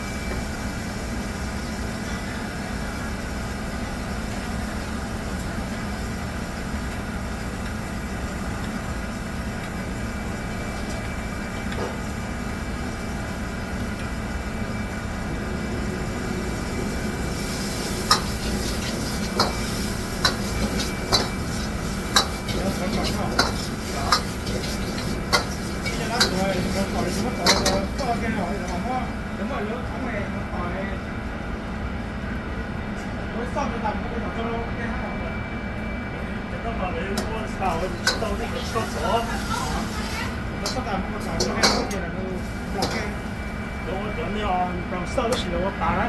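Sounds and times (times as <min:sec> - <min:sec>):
kitchen equipment hum: 0:00.0 - 0:30.2, 0:37.2 - 0:45.8
utensils knocking on cookware: 0:18.1 - 0:28.8, 0:40.6 - 0:42.0, 0:42.8 - 0:43.1.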